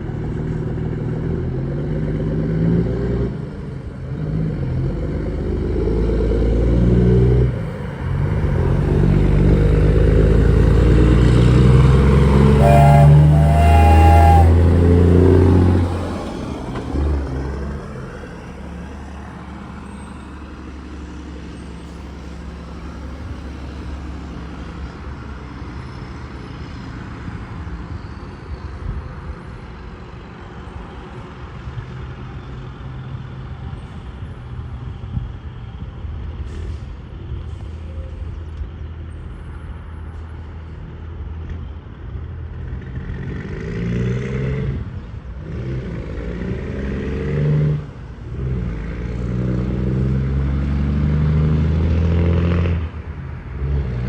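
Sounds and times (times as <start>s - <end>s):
truck engine: 0.0s - 27.8s
engines droning: 4.0s - 26.3s
vehicle passing: 5.6s - 19.0s.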